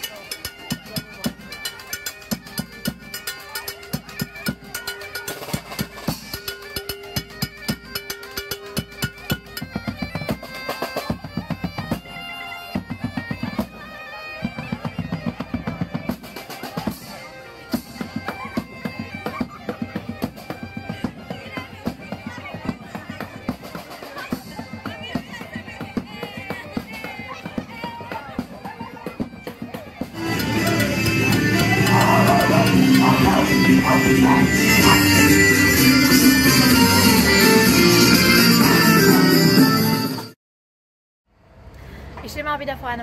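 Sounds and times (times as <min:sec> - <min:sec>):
bagpipe music: 0:00.0 - 0:40.4
quick steady drumbeat: 0:17.7 - 0:35.3.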